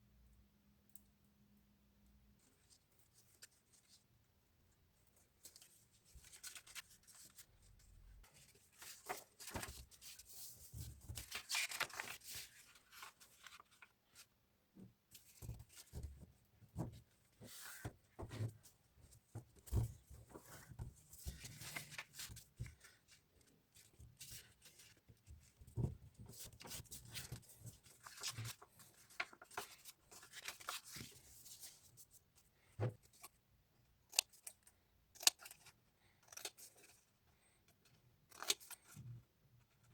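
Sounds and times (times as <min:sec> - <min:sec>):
paper rustling: 0:05.4 - 0:14.3, 0:19.6 - 0:23.2, 0:23.8 - 0:32.0
scissors snipping paper: 0:34.1 - 0:36.9.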